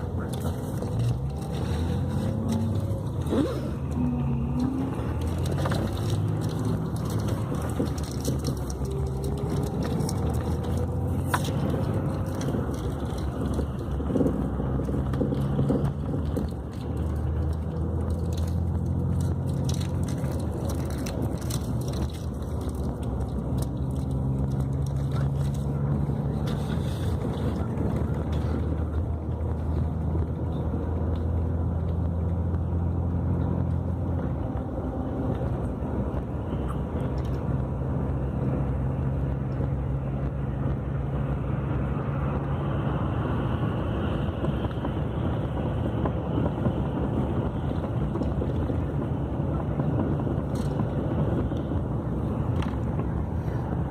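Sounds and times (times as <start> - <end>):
bus diesel engine droning: 0.0 - 22.7.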